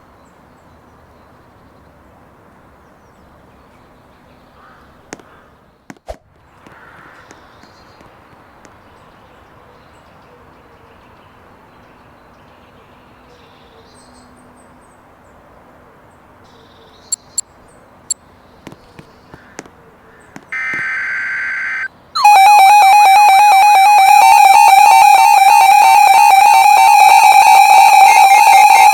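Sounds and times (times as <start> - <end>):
buzzy data burst: 20.6 - 28.9
electronic attention tone: 20.6 - 28.9.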